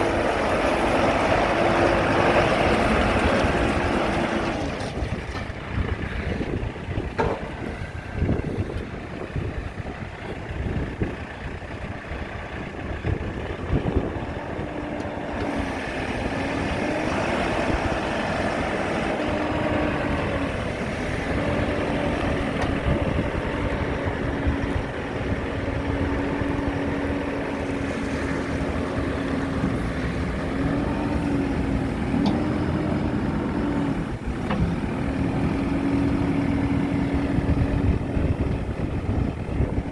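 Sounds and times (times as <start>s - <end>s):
diesel engine running: 0.0s - 39.9s.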